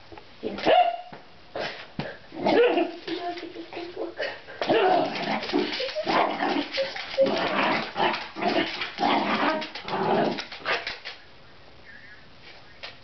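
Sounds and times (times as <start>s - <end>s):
dog barking and growling: 0.5s - 4.0s, 4.7s - 11.1s.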